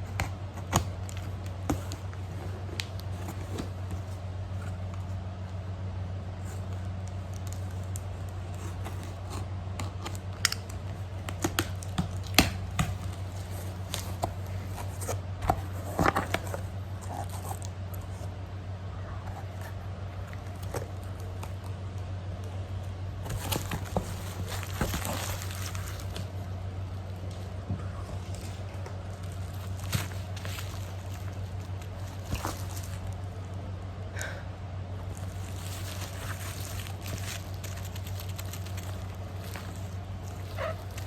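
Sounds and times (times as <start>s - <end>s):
steady low hum: 0.0s - 41.0s
wrapping crinkling and tearing: 6.4s - 18.2s, 23.2s - 33.6s, 35.0s - 41.0s.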